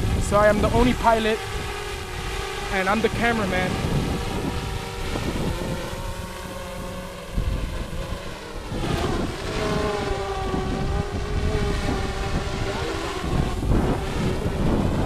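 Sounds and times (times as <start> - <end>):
drone propellers whining: 0.0 - 15.0
wind buffeting microphone: 0.0 - 15.0.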